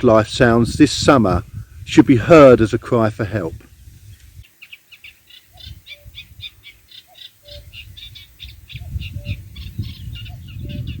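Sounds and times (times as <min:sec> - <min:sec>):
reed warbler singing: 0:00.1 - 0:11.0
cuckoo calling: 0:04.4 - 0:11.0.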